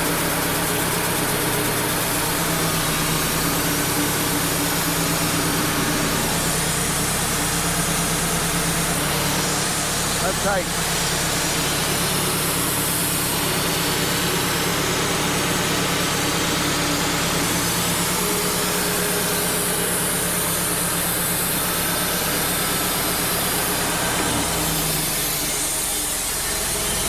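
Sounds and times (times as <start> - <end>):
band saw cutting log: 0.0 - 27.0.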